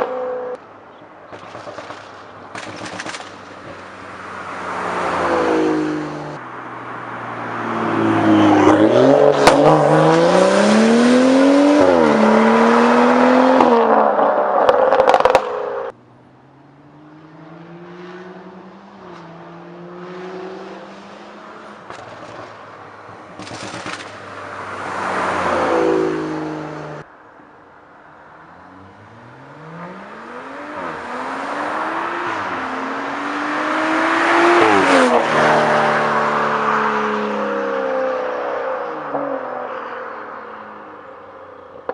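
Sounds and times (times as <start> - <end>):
exhaust cracks: 23.3 - 24.3.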